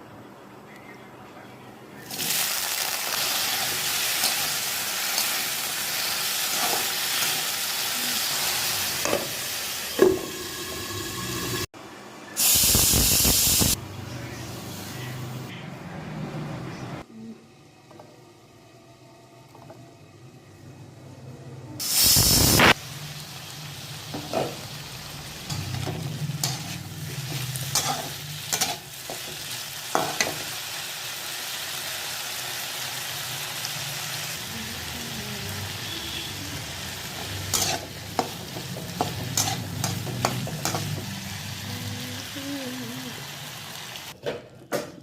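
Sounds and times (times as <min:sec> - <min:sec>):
food sizzling in a pan: 0:02.1 - 0:11.7, 0:12.4 - 0:13.8, 0:21.8 - 0:44.2.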